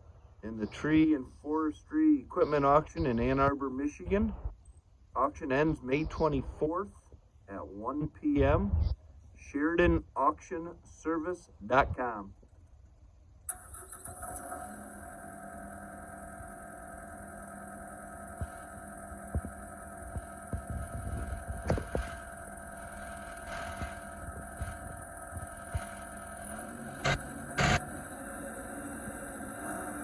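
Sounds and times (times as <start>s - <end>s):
stump grinder engine idling: 13.5s - 30.0s
scattered clicks: 16.9s - 28.0s.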